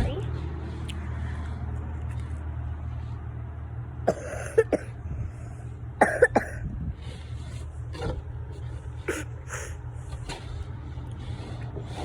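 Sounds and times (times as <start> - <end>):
steady low hum: 0.0 - 12.0
person coughing: 4.1 - 4.9, 6.0 - 6.6, 9.1 - 9.7.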